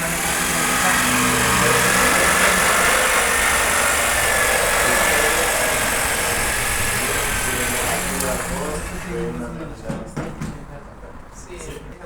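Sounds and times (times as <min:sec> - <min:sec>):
power tool motor whine: 0:00.0 - 0:09.3.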